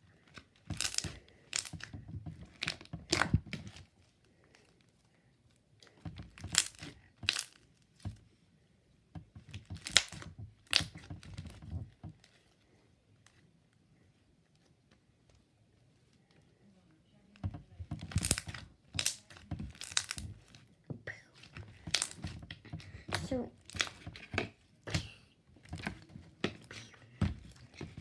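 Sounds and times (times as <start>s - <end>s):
slime squished by hand: 0.2s - 4.9s, 5.9s - 8.2s, 9.4s - 11.8s, 17.9s - 20.6s, 21.4s - 28.0s.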